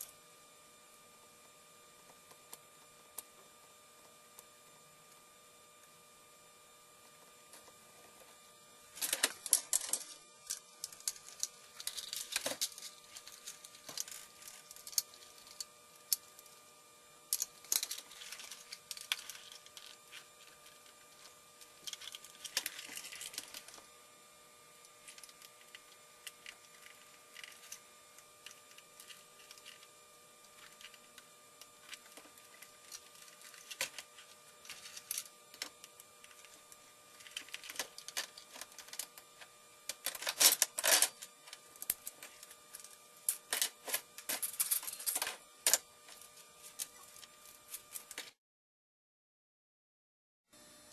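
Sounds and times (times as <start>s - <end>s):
faint steady hum: 0.0s - 48.4s, 50.5s - 50.9s
plastic parts clicking and rattling: 9.0s - 16.2s, 17.3s - 20.2s, 21.2s - 23.8s, 31.8s - 36.5s, 37.2s - 39.1s, 39.9s - 45.8s.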